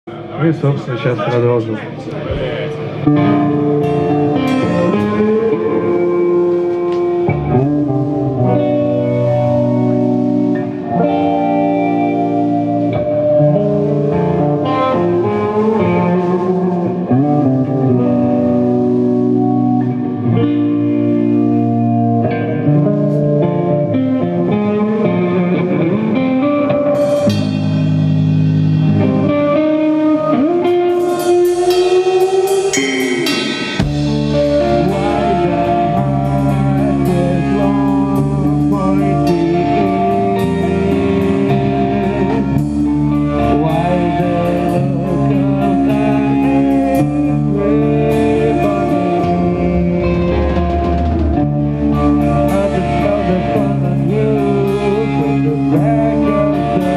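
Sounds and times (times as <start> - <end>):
live rock band playing: 2.3 - 56.9
ringing guitar notes: 2.6 - 56.9
cymbals and drums: 30.9 - 39.6.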